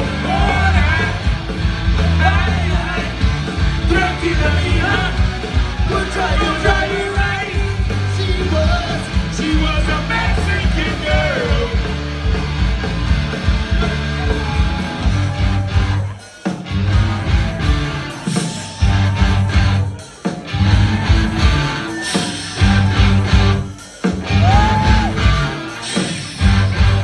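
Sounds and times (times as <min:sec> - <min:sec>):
person singing: 0:00.0 - 0:01.3, 0:02.0 - 0:11.9
punk rock band playing live: 0:00.0 - 0:27.0.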